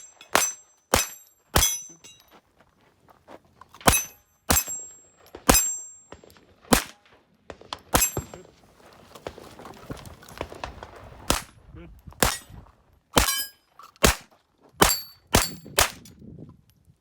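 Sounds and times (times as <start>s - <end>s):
pistol shots: 0.0s - 1.8s, 3.8s - 7.1s, 7.7s - 8.4s, 11.3s - 11.5s, 12.2s - 12.5s, 14.0s - 16.1s
steel plate ringing: 0.0s - 2.2s, 3.9s - 6.1s, 8.0s - 8.3s.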